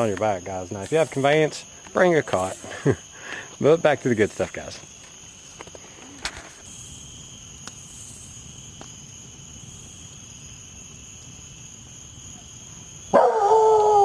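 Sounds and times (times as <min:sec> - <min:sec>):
crickets chirping: 0:00.0 - 0:14.0
dog barking: 0:13.1 - 0:14.0.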